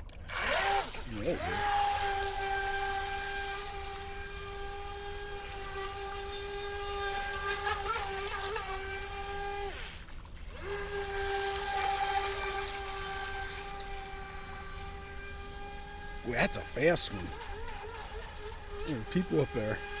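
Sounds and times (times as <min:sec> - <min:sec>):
electric motor high whine: 0:00.0 - 0:20.0.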